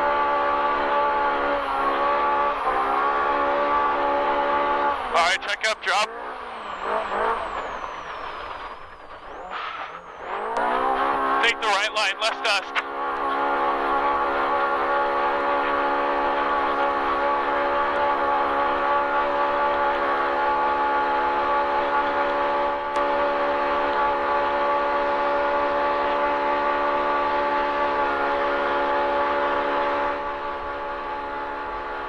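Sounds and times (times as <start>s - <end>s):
engine droning at high revs: 0.0s - 32.0s.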